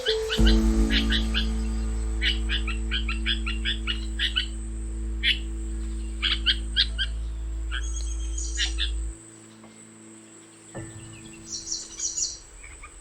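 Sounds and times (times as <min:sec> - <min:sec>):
high bird chirps: 0:00.0 - 0:09.8
background music drone: 0:00.0 - 0:13.0.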